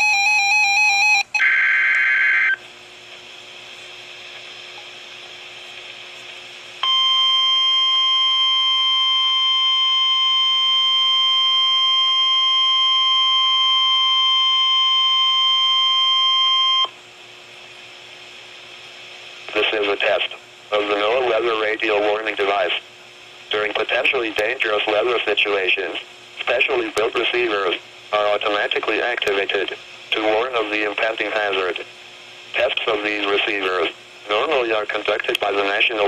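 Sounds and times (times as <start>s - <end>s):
steady loud alarm beep: 6.8s - 16.9s
radio hiss: 18.4s - 36.0s.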